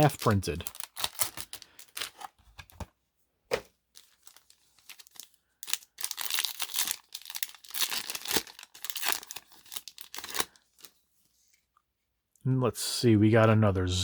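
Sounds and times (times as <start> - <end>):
foil wrapper tearing and crinkling: 0.0 - 2.3, 4.0 - 10.9.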